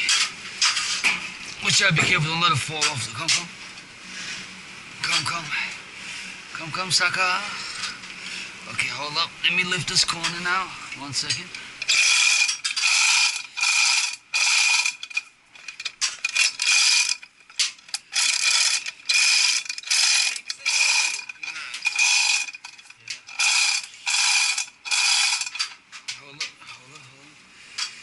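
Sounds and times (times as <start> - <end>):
metallic hand ratchet strokes: 11.8 - 25.7.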